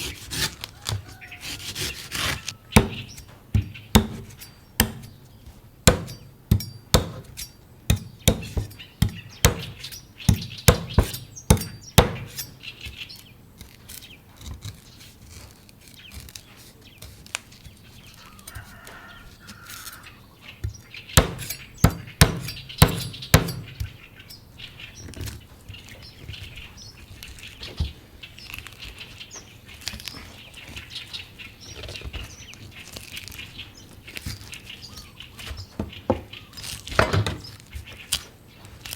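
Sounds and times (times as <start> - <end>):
knife scraping coconut: 0.0 - 3.4, 4.0 - 5.2, 13.6 - 20.2, 21.2 - 23.8
knife striking coconut: 0.0 - 5.2, 5.9 - 12.5, 21.2 - 23.9.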